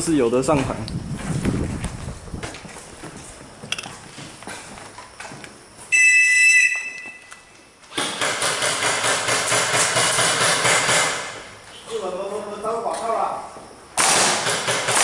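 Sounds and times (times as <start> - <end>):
loud rushing rustling noise: 0.6 - 3.4
referee's whistle blast: 5.9 - 7.3.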